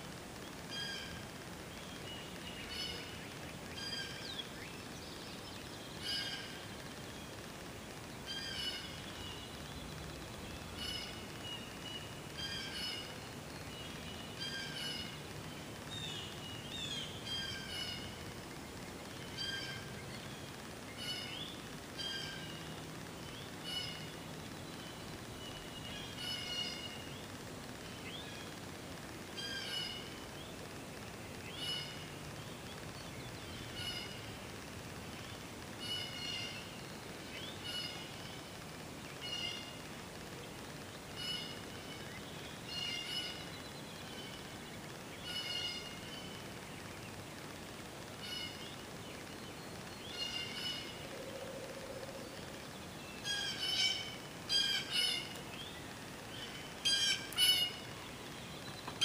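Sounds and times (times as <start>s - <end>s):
outdoor hiss: 0.0s - 59.0s
bird call notes: 53.2s - 55.5s, 56.4s - 58.1s.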